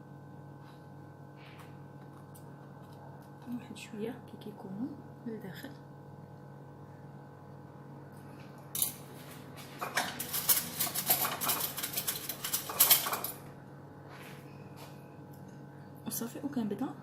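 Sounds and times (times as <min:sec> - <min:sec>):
faint steady hum: 0:00.0 - 0:17.0
clattering and rustling: 0:09.2 - 0:13.4
kitchenware clink: 0:09.8 - 0:13.4.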